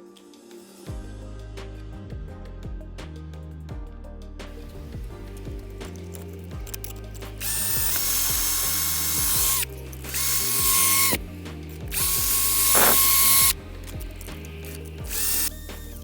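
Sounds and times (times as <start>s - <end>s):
background music: 0.0s - 16.0s
power drill running: 7.4s - 11.3s, 11.9s - 16.0s.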